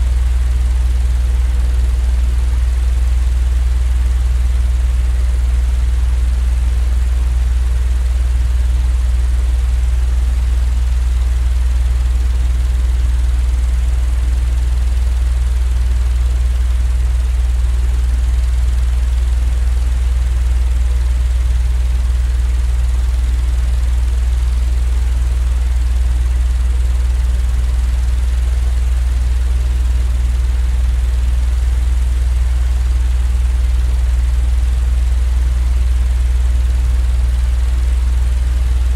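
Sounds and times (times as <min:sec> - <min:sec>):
low machine drone: 0:27.4 - 0:30.8.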